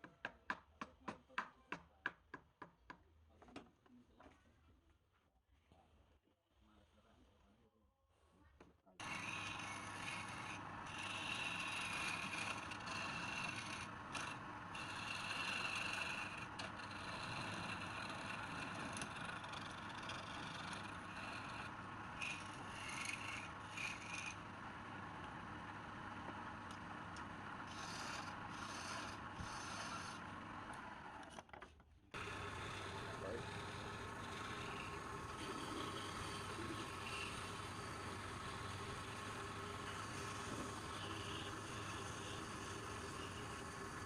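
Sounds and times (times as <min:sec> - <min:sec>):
tool scraping spinning wood: 0:09.0 - 0:31.4, 0:32.2 - 0:44.0.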